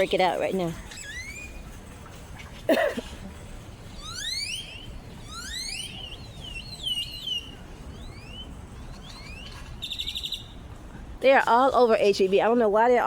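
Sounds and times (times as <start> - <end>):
warbling bird whistle: 0.9 - 1.7, 3.9 - 10.6
grackles whistling: 0.9 - 2.6, 3.9 - 10.7.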